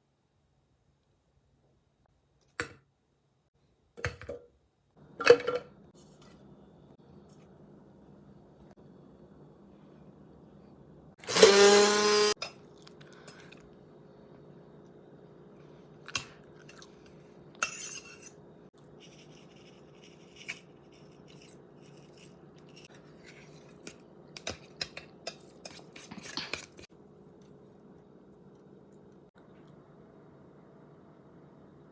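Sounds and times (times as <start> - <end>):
food processor whirring: 11.2 - 12.4.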